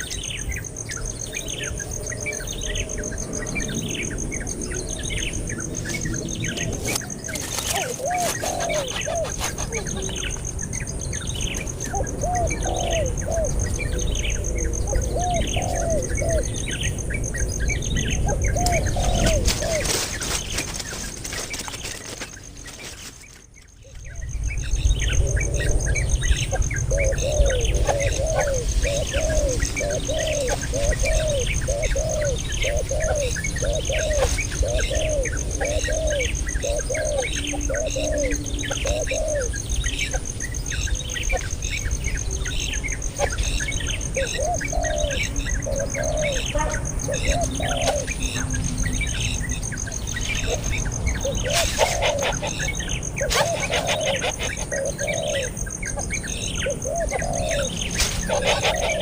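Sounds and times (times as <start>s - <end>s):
baby birds chirping: 4.3s - 22.2s, 23.9s - 59.0s
lower squeaky calls: 4.4s - 24.4s, 25.2s - 59.0s
scuffling noise: 6.8s - 10.2s, 19.2s - 23.7s.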